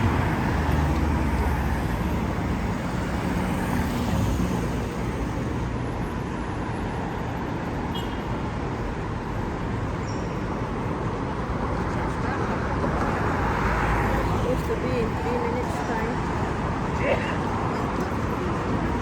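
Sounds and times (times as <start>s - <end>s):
traffic noise: 0.0s - 19.0s.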